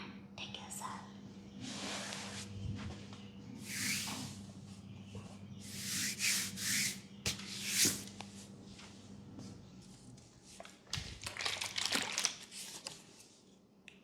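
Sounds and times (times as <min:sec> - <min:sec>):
hands rubbing over skin: 0:03.6 - 0:04.3, 0:05.6 - 0:08.1.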